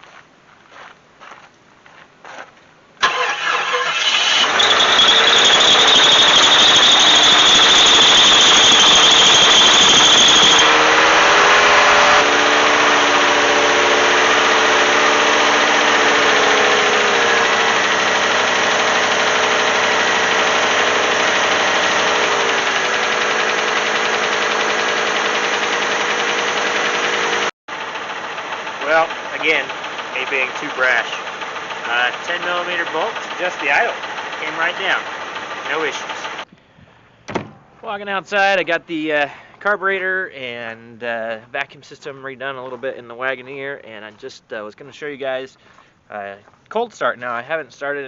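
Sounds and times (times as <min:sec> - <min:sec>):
car engine starting and idling: 0:03.0 - 0:36.5
high steady squeal: 0:03.5 - 0:27.5.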